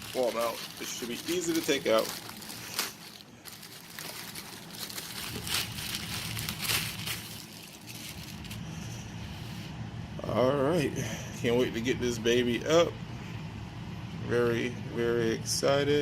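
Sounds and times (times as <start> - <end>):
packaging crinkling and rustling: 0.0 - 8.9.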